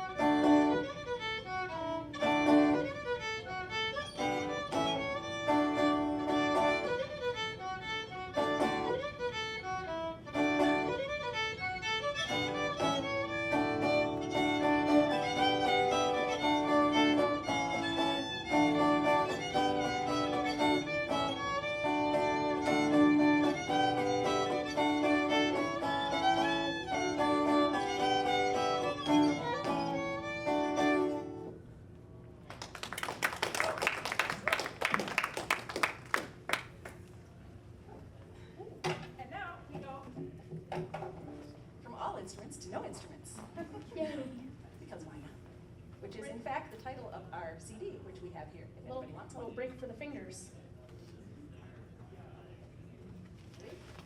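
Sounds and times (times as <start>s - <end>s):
fiddle playing folk tune: 0.0s - 31.6s
audience clapping: 32.4s - 37.2s.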